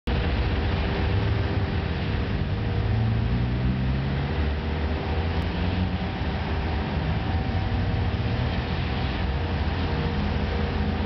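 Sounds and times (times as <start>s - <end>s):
steady hiss: 0.1s - 11.0s
diesel paving machinery running: 4.2s - 11.0s.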